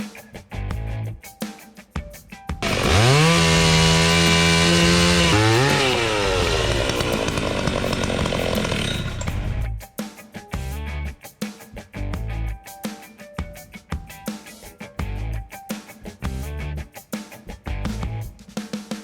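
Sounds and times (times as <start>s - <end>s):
chainsaw cutting logs: 2.6s - 9.6s
chainsaw revving: 2.6s - 9.7s.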